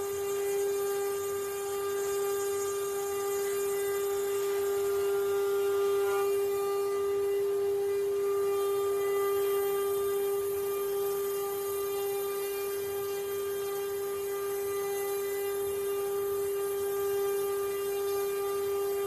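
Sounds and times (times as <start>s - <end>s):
router spindle motor whining: 0.0s - 19.0s.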